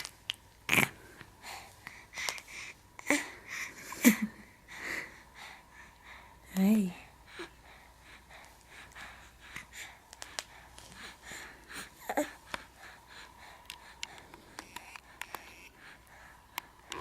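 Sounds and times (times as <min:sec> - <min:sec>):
baby breathing: 0:00.7 - 0:17.0.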